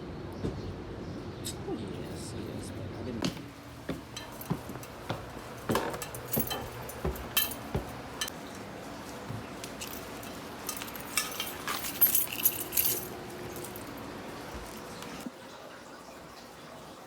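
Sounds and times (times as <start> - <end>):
small hard objects clinking: 9.6 - 15.3.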